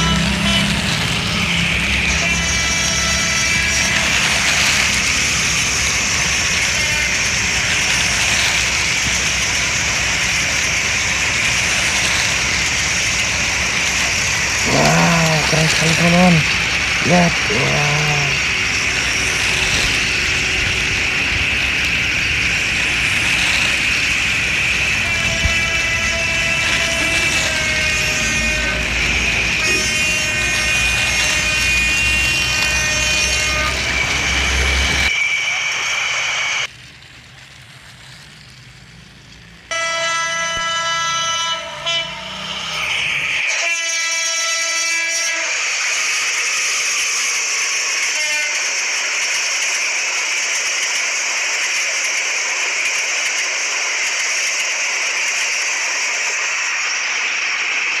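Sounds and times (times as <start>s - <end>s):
faint toy train toot: 0.0s - 9.4s, 10.1s - 21.7s, 39.7s - 55.8s
toy train electronic horn: 0.0s - 10.1s, 24.5s - 34.7s, 39.7s - 49.8s.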